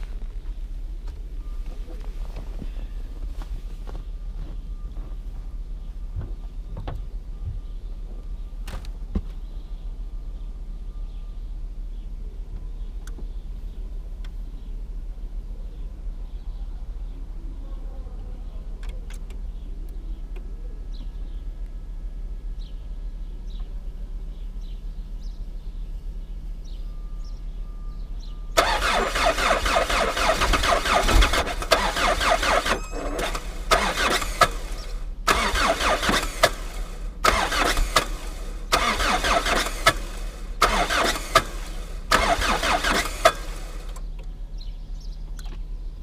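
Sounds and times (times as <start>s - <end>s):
diesel engine cranking: 28.5s - 44.3s.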